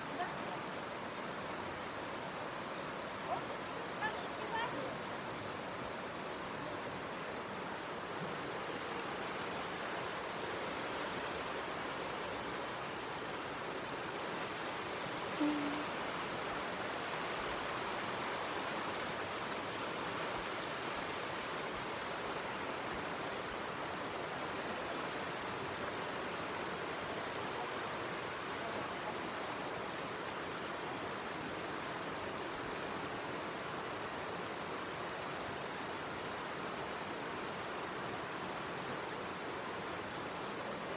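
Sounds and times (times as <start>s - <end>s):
creek rushing: 0.0s - 40.9s
short tone: 15.4s - 16.0s.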